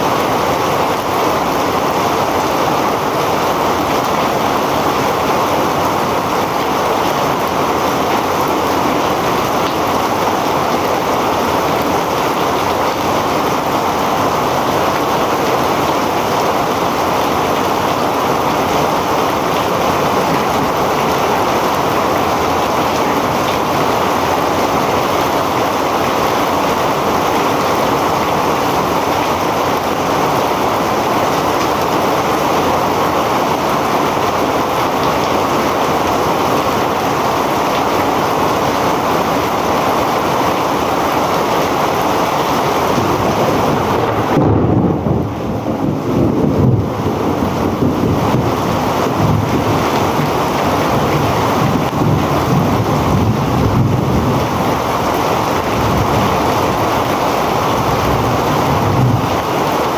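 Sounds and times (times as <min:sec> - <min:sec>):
heavy rain falling: 0:00.0 - 0:59.9.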